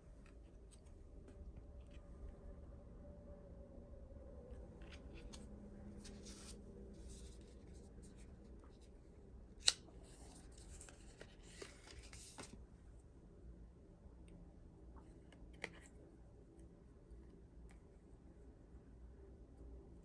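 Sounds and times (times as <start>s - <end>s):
paper and plastic rustling: 10.1s - 12.6s.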